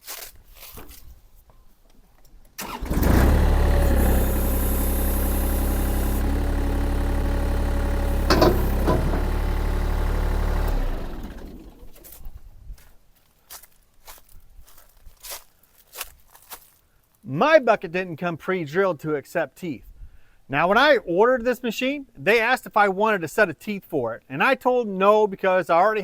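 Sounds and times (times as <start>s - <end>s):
mini skid steer engine running: 2.6s - 12.3s.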